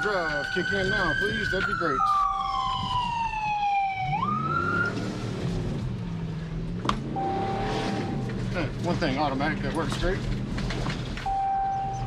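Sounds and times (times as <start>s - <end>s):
fire engine siren wailing: 0.0s - 5.8s, 7.1s - 8.5s, 11.2s - 12.0s
low engine drone: 3.9s - 12.0s.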